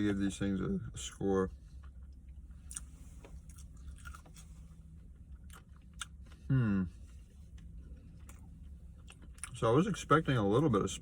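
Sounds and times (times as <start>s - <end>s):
person chewing food: 1.7s - 9.6s
person humming: 6.5s - 6.9s.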